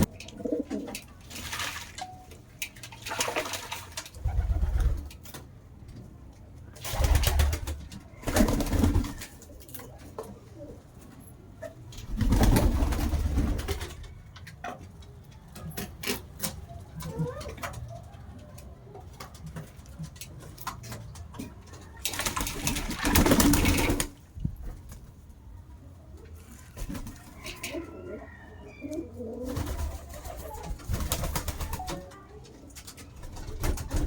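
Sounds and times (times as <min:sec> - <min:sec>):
pigeons cooing: 0:00.0 - 0:01.1, 0:27.3 - 0:31.8
wing-flapping and splashing: 0:01.2 - 0:02.0, 0:02.8 - 0:05.1, 0:22.0 - 0:24.3.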